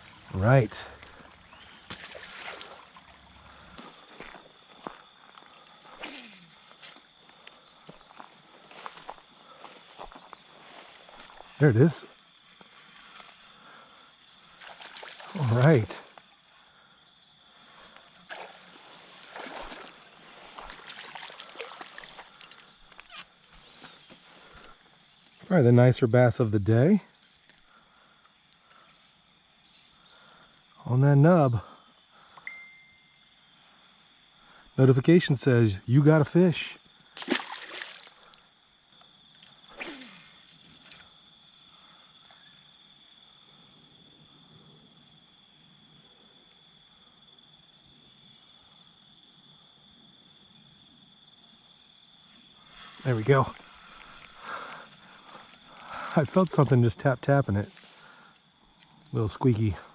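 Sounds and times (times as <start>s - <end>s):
insects droning: 0.0s - 59.9s
fish splashing at water surface: 1.9s - 3.1s, 18.3s - 22.6s, 37.2s - 38.3s.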